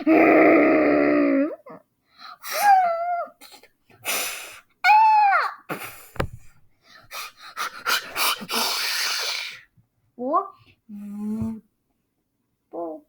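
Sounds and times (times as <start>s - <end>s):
person moaning and whining: 0.0s - 1.8s.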